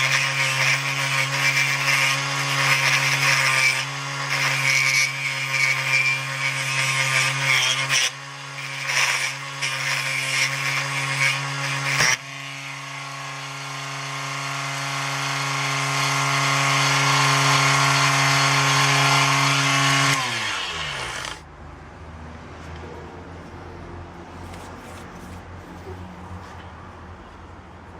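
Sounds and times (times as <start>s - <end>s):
tool scraping spinning wood: 0.0s - 21.4s.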